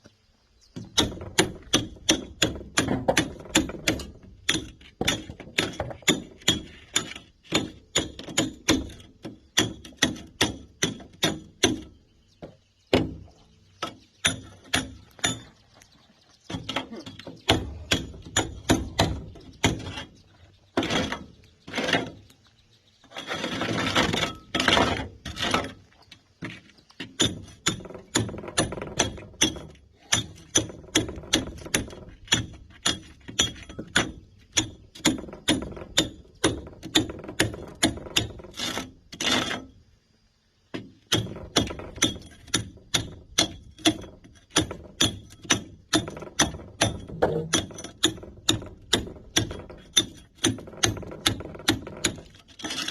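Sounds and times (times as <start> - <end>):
rough scraping sounds: 17.6 - 28.7, 38.1 - 39.8, 49.1 - 52.9.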